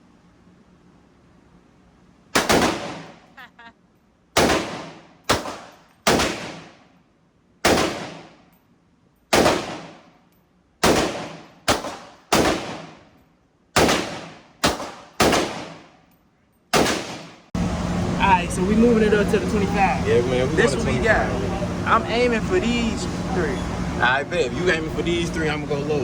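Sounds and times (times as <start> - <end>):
gunshots echoing: 2.4 - 3.2, 4.4 - 6.8, 7.6 - 8.4, 9.3 - 10.1, 10.8 - 13.1, 13.8 - 16.0, 16.7 - 17.5.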